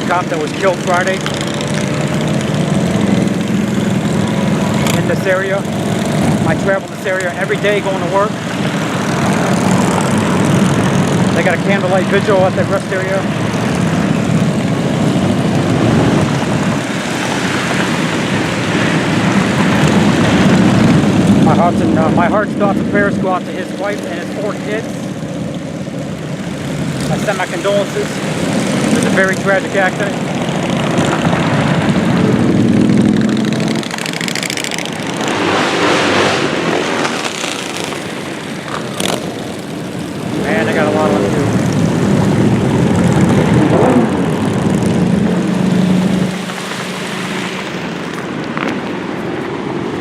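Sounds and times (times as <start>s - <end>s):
vehicle engine and road noise: 0.0s - 50.0s.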